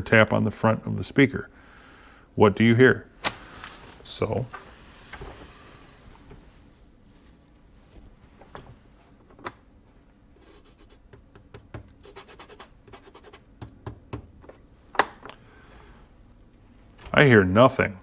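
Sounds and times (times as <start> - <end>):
fingertips scratching a loudspeaker: 10.4 - 11.3, 12.0 - 13.5.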